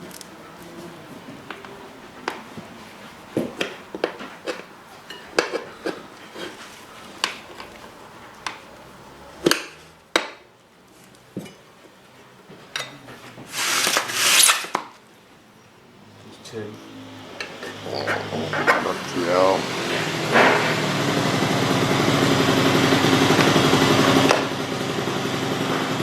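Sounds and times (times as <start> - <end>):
harsh scraping rasp: 13.5 - 14.7, 17.4 - 23.6.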